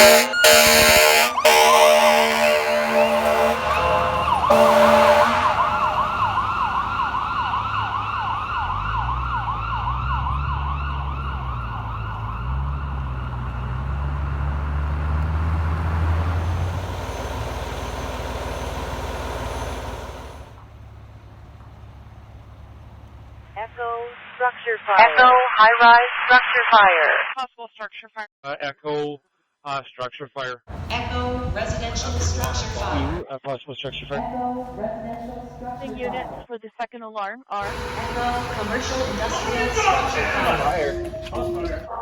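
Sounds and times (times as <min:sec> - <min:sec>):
air horn blasts: 0:00.0 - 0:06.8, 0:37.6 - 0:41.2
electronic yelp siren: 0:00.0 - 0:13.6, 0:37.6 - 0:42.0
low engine rumble: 0:00.0 - 0:23.8, 0:30.7 - 0:33.2, 0:33.9 - 0:36.5, 0:37.6 - 0:42.0.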